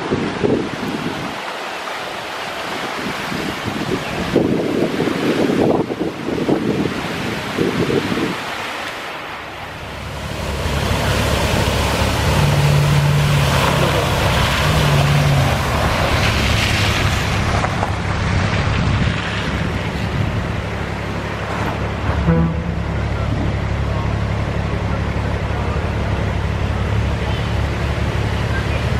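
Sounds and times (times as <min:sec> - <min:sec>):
wind buffeting microphone: 0:00.0 - 0:01.5, 0:02.8 - 0:08.6, 0:10.0 - 0:22.2
floodwater rushing: 0:00.0 - 0:28.9.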